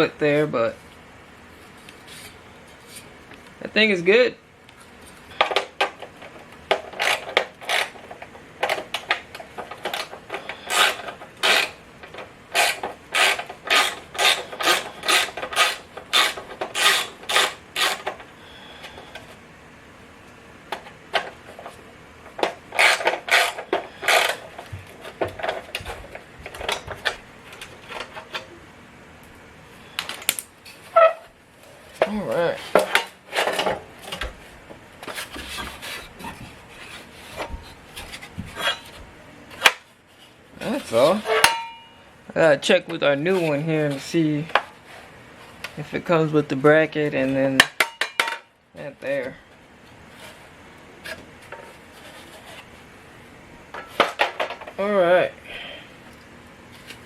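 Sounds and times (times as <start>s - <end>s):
hand tool mechanical strokes: 9.9s - 11.8s, 12.5s - 18.2s, 22.7s - 24.5s.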